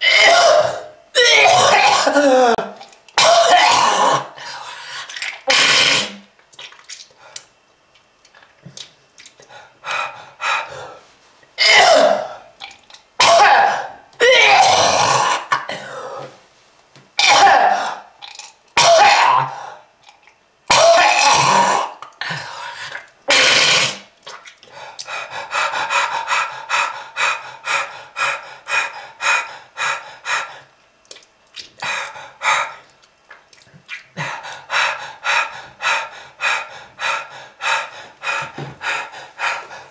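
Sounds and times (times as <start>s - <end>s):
person coughing: 0.0s - 4.3s, 11.6s - 12.4s.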